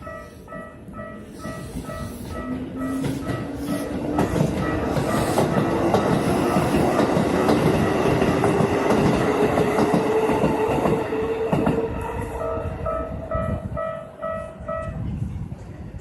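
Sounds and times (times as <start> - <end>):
crossing warning bell: 0.0 - 9.9, 11.8 - 15.1
train wheels clattering: 0.0 - 11.9
train whine: 0.0 - 16.0.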